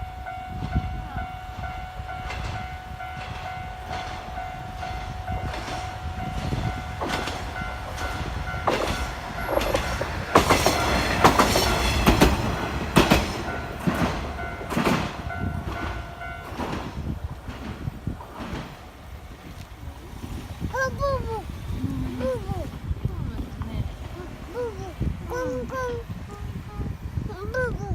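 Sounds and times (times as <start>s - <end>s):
level crossing warning bell: 0.0s - 17.4s
wheels clacking over rail joints: 0.7s - 21.8s.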